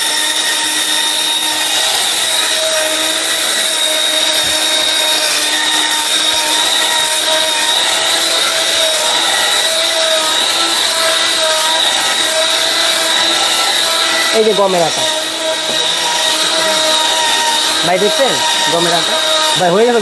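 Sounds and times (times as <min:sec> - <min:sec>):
dry grinding rush: 0:00.0 - 0:20.0
mixer grinder motor whine: 0:00.0 - 0:20.0.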